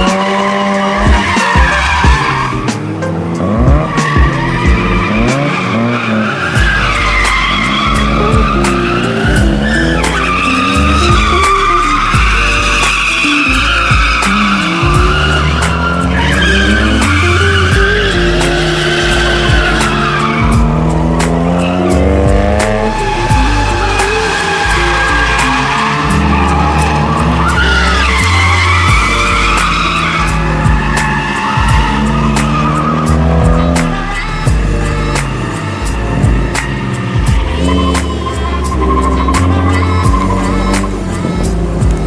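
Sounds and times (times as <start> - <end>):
rotary engine revving: 0.0 - 42.0
tyres squealing: 0.0 - 42.0.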